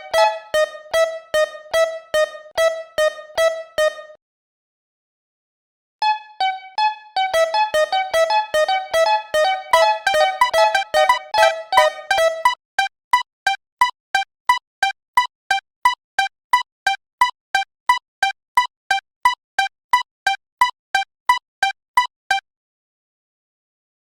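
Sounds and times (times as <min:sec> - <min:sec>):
level crossing warning bell: 0:07.7 - 0:12.6.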